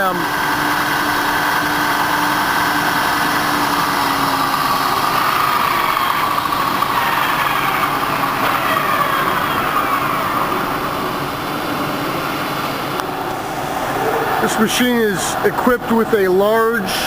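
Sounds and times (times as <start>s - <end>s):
lathe gear whine: 0.0s - 17.0s
lathe mechanical hum: 0.0s - 17.0s.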